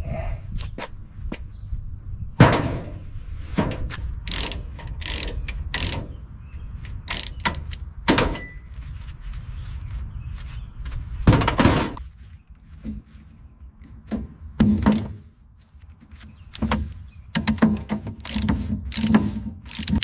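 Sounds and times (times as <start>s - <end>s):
metal clanks and knocks on car parts: 2.4s - 3.0s, 3.6s - 6.1s, 7.1s - 8.6s, 11.2s - 12.0s, 14.0s - 15.3s, 16.6s - 20.0s.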